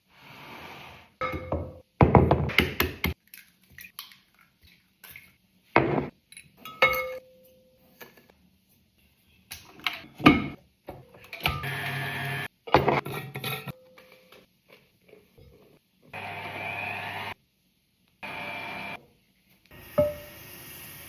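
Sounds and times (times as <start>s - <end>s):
dishes and cutlery clattering: 6.3s - 8.3s, 12.7s - 14.5s.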